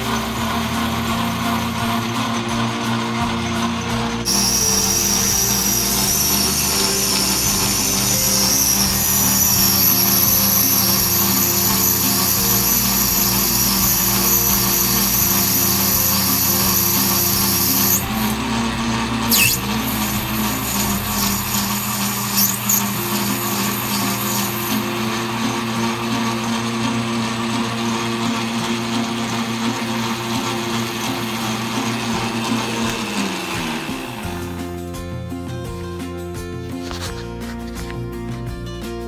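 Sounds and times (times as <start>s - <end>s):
metal lathe running: 0.0s - 34.6s
cutting tool hissing on brass: 4.3s - 18.4s, 19.2s - 34.5s.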